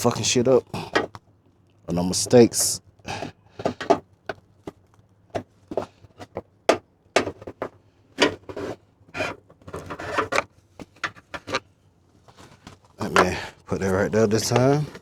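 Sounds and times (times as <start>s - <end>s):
clicks and knocks of parts: 0.8s - 1.2s, 3.2s - 11.7s
rubbing of parts: 0.8s - 1.2s, 2.0s - 4.8s, 5.4s - 15.0s.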